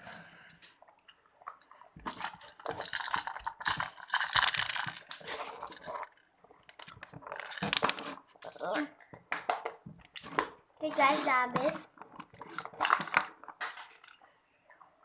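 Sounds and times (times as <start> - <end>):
small hard objects crackling: 1.5 - 8.9.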